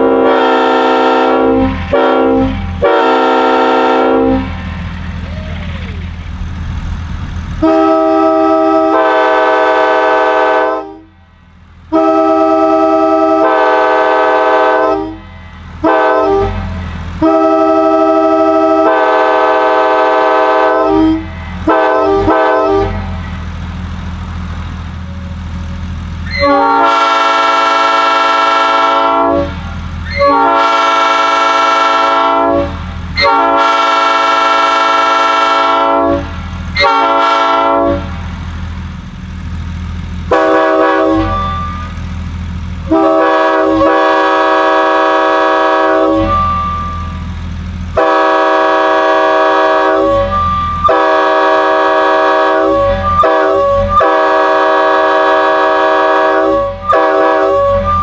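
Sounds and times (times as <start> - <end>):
locomotive air horn blasts: 0.0 - 5.4, 7.6 - 23.4, 26.2 - 38.4, 40.3 - 42.0, 42.8 - 47.3, 47.9 - 58.0.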